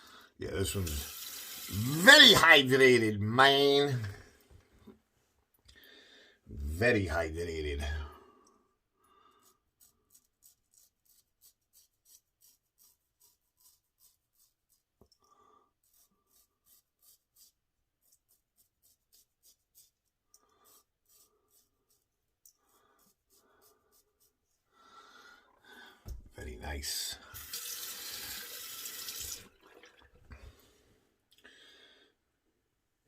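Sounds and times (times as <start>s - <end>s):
razor scraping stubble: 9.4s - 15.0s, 15.8s - 24.4s.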